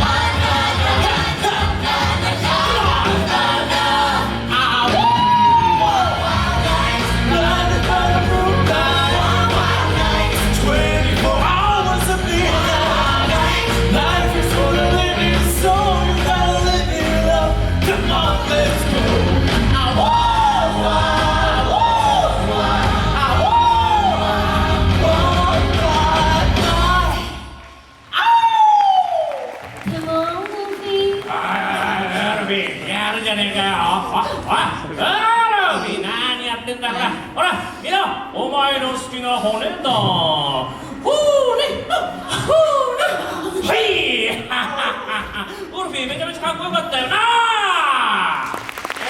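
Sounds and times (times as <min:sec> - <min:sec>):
loud rock song: 0:00.0 - 0:27.6.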